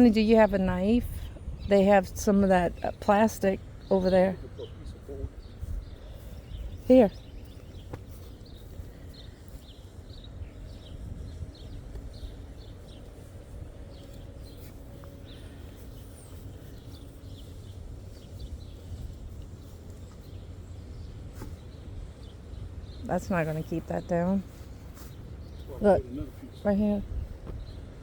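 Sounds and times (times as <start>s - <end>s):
low outdoor rumble: 0.0s - 28.0s
small birds chirping: 0.0s - 28.0s.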